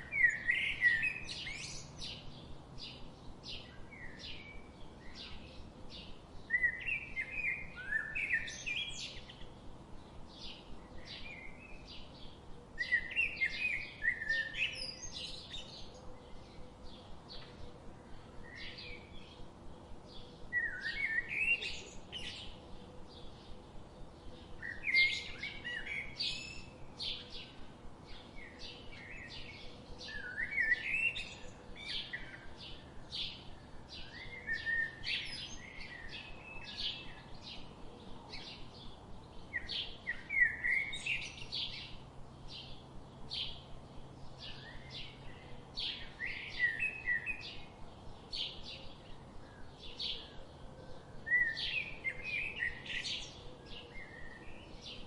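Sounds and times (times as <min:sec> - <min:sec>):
birds chirping and twittering: 0:00.0 - 0:55.0.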